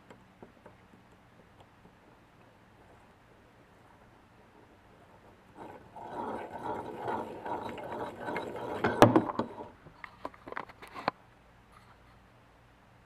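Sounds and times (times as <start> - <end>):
engine crankshaft rattling: 0.5 - 9.9.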